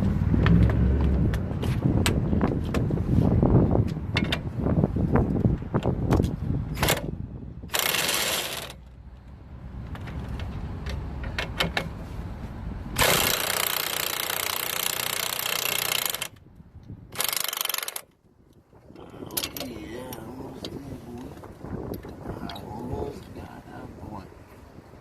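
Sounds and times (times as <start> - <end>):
power tool running: 7.7 - 8.8, 13.0 - 16.3.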